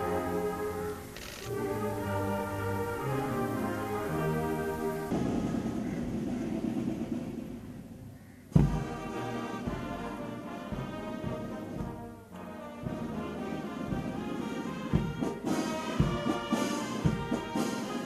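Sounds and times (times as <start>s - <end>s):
brass orchestral music: 0.0s - 7.1s, 8.5s - 18.0s
low drum beats: 5.1s - 17.7s.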